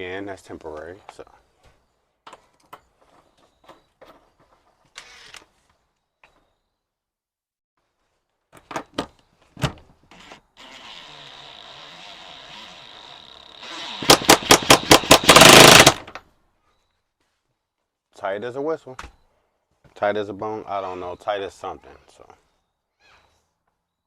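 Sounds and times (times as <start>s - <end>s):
rapid hammering and rattling: 14.0s - 16.1s.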